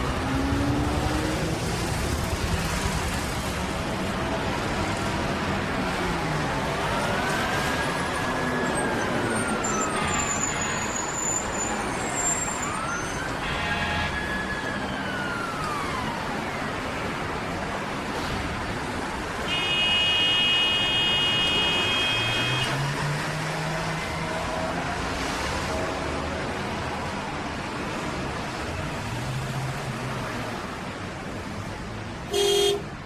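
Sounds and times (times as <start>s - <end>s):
traffic noise: 0.0s - 33.0s
siren wailing: 6.6s - 17.1s
horn sounding: 19.5s - 22.8s, 32.3s - 32.9s.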